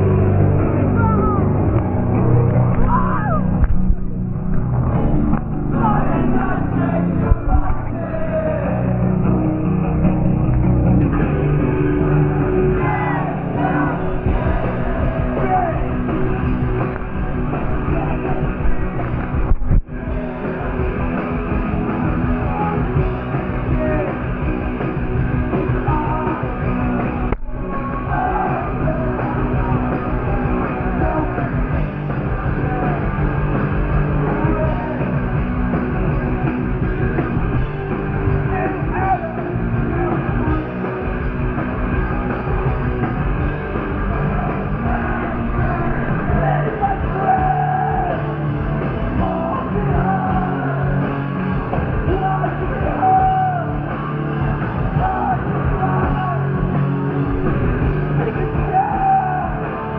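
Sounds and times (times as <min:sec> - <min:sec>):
live punk rock band: 0:00.0 - 0:59.9
person singing: 0:25.5 - 0:31.8, 0:49.0 - 0:51.1.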